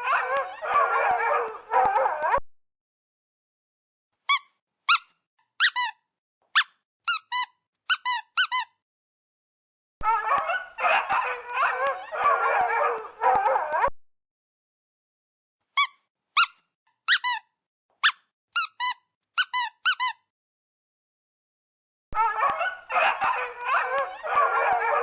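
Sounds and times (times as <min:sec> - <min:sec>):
dog whining and howling: 0:00.0 - 0:02.4, 0:10.0 - 0:13.9, 0:22.2 - 0:25.0
short high squeaks: 0:15.8 - 0:17.4, 0:18.0 - 0:20.2.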